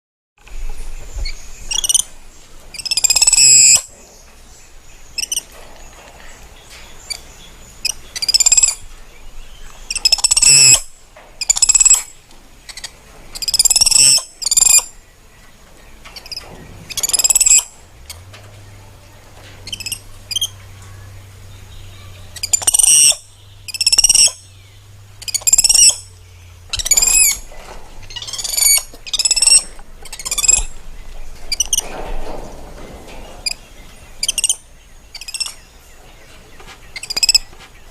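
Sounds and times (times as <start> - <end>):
monkey chirping calls: 1.7 - 2.1, 2.7 - 3.9, 9.9 - 12.1, 12.7 - 14.8, 19.7 - 20.5, 22.0 - 24.5, 25.2 - 26.1, 28.1 - 30.7, 34.2 - 35.6, 37.0 - 37.4.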